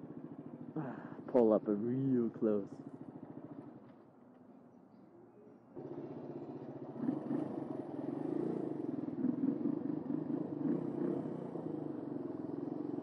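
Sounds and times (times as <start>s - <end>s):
motorcycle engine revving: 5.8s - 13.0s.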